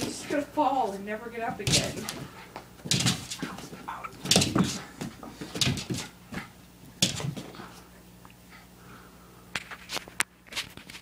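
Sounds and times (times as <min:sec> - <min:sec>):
dog thudding against wall: 0:01.6 - 0:06.1, 0:07.0 - 0:07.5.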